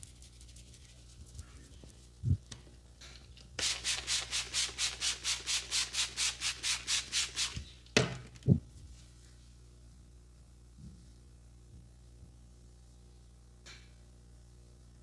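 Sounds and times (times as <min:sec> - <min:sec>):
hands rubbing in a massage: 0:03.6 - 0:08.6.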